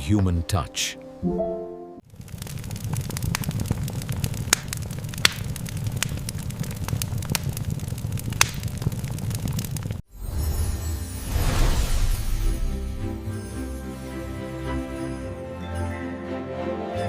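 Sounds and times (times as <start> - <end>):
fire crackling and popping: 2.0 - 10.5.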